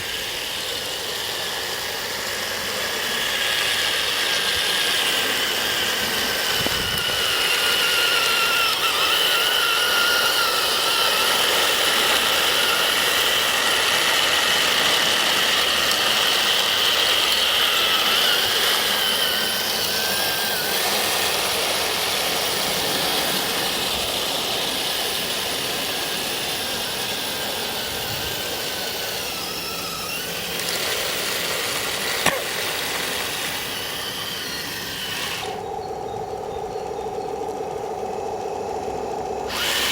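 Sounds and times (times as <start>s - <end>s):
electric motors whining: 0.0s - 39.9s
sharp click: 32.2s - 32.5s.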